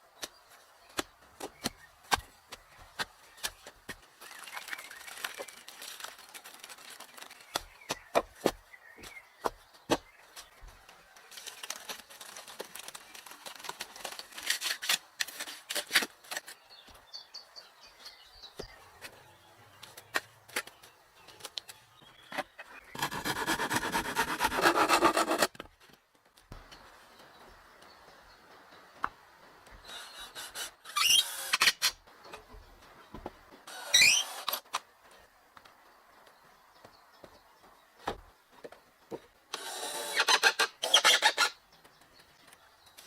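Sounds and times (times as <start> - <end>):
scraping and rubbing wood: 22.3 - 25.6
loud rasping: 23.0 - 25.5.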